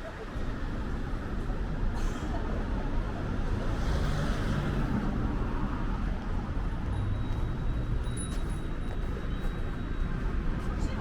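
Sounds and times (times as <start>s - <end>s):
passing road traffic rumble: 0.4s - 8.8s.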